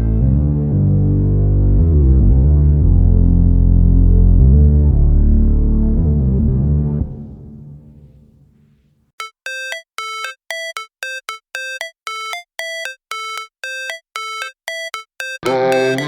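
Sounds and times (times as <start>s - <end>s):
synthesized beep melody: 9.2s - 16.0s.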